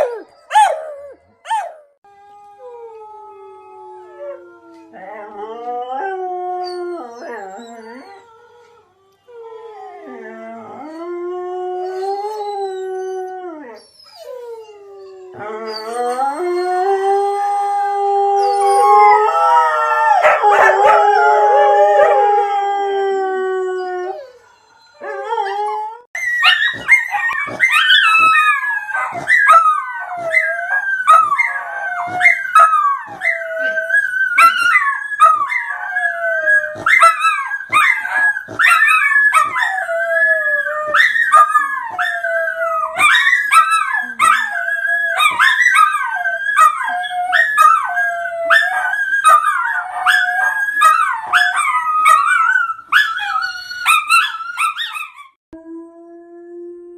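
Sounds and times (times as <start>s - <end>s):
dog howling: 14.6s - 56.9s.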